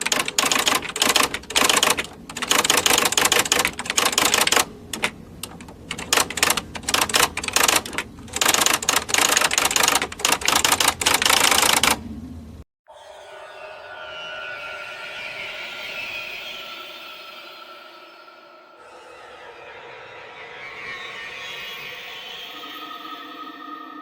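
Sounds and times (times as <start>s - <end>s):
typewriter keys clicking: 0.0s - 12.0s.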